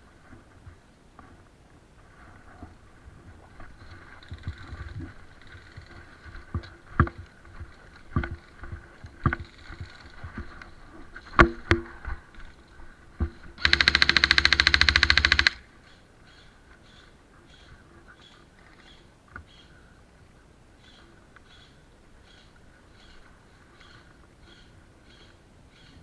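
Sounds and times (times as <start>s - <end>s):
airsoft gun full-auto burst: 13.6s - 15.6s.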